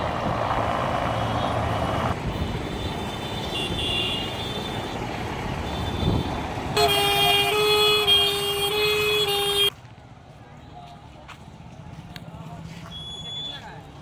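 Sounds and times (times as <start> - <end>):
road traffic noise: 0.0 - 14.0
musical vehicle horn: 2.4 - 4.9, 5.7 - 9.7.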